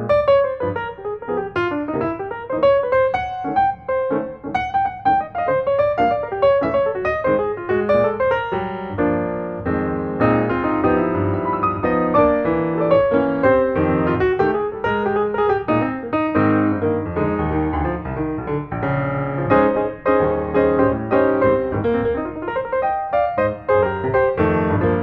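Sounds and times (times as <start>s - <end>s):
piano music: 0.0s - 25.0s.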